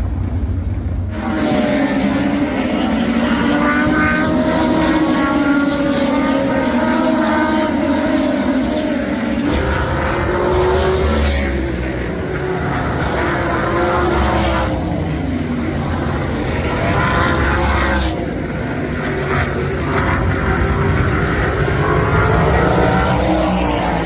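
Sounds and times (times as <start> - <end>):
race cars passing at speed: 0.0 - 24.0.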